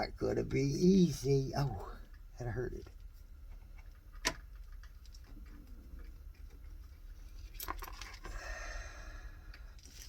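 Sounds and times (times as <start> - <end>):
faint clicks of small parts: 2.0 - 8.4, 9.4 - 10.0.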